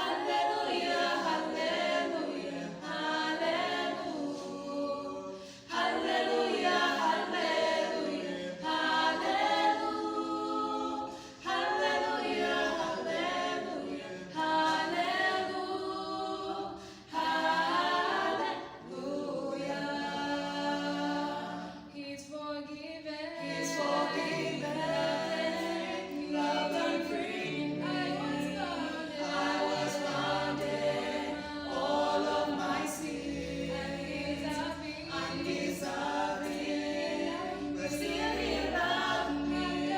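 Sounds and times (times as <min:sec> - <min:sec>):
choir singing a cappella: 0:00.0 - 0:39.9.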